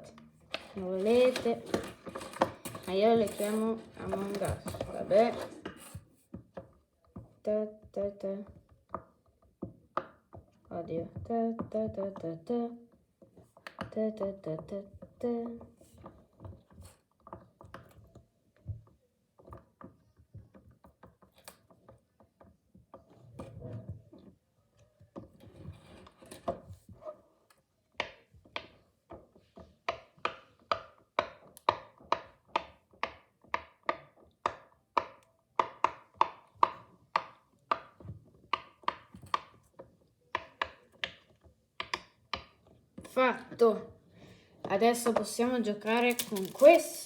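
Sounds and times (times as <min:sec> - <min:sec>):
handling rustles: 0:00.5 - 0:06.1, 0:44.9 - 0:47.0.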